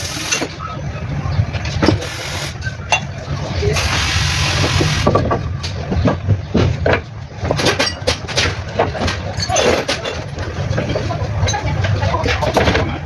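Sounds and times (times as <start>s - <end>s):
diesel engine running: 0.0s - 7.6s.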